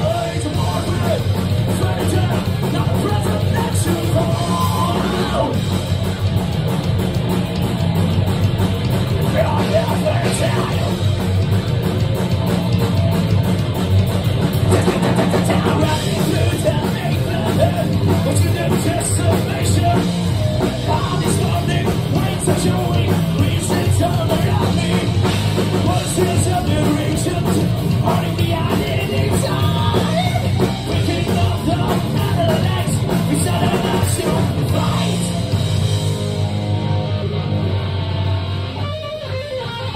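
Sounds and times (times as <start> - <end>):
person singing: 0.0 - 5.6
bass guitar: 0.0 - 39.9
distorted electric guitars: 0.0 - 39.9
fast drum kit: 0.0 - 39.9.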